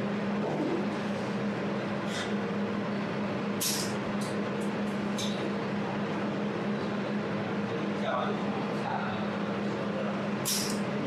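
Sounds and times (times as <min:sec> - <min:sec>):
laser welding machine humming: 0:00.0 - 0:11.0.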